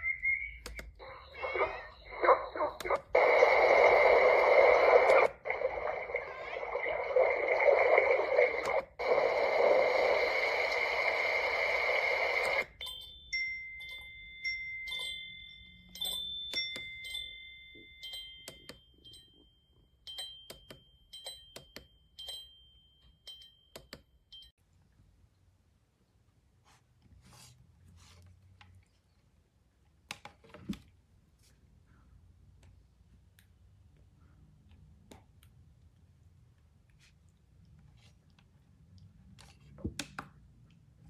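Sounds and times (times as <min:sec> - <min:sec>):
speaker hiss with faint high tone: 0:00.0 - 0:12.8
clicks: 0:00.0 - 0:13.0.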